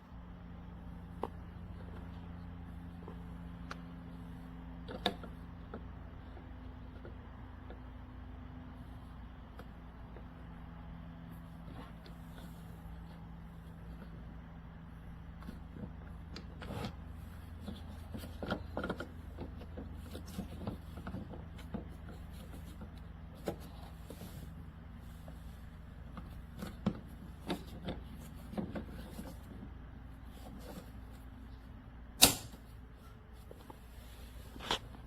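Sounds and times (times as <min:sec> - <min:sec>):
loud sharp click: 0:32.2 - 0:32.6.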